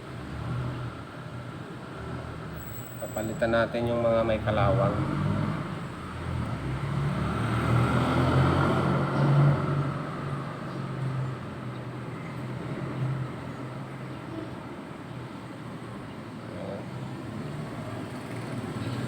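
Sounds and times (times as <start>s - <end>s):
vehicle engine passing: 4.1s - 10.6s.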